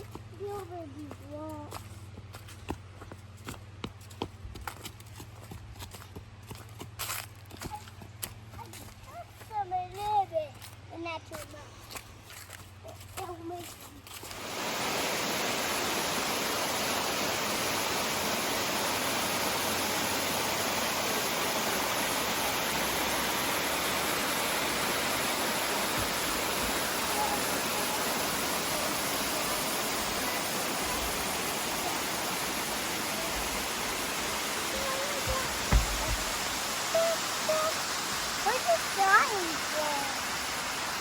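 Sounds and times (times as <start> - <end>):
steady rush of water: 14.1 - 41.0.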